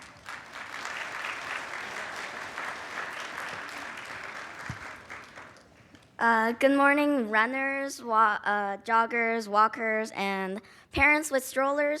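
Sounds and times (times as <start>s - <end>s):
audience applauding: 0.0s - 5.9s.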